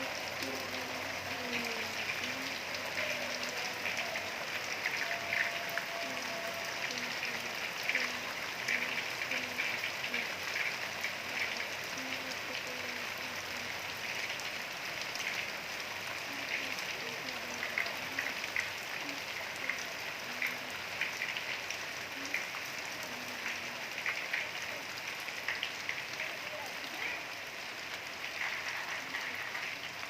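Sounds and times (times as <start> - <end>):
rain falling: 0.0 - 30.0
raindrops striking: 0.0 - 30.0.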